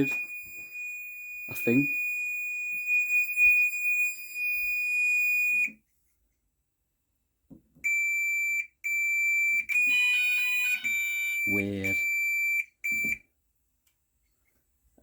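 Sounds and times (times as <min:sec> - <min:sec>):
fire alarm continuous high tone: 0:00.0 - 0:05.8, 0:07.8 - 0:13.2.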